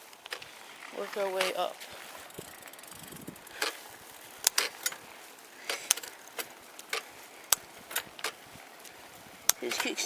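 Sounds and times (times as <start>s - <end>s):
bike chain moving across cogs: 0.0s - 10.0s
bike gear shifter clicks: 2.3s - 10.0s.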